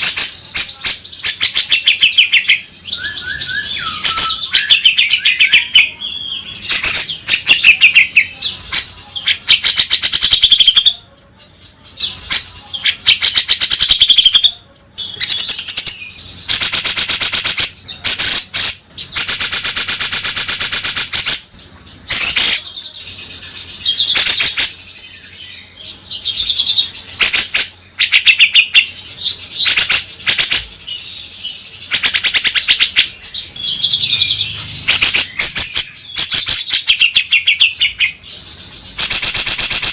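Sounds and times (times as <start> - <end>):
bird harsh chattering: 0.0 - 11.3, 12.0 - 25.0, 26.2 - 39.9
bird whistled chirps: 1.4 - 8.1.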